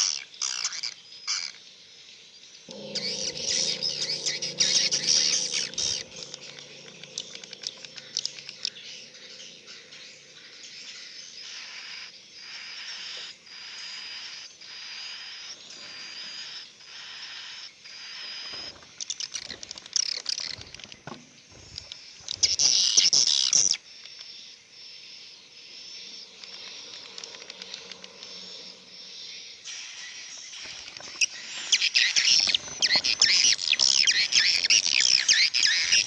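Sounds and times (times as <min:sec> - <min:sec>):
low steady hum: 0:02.7 - 0:11.6.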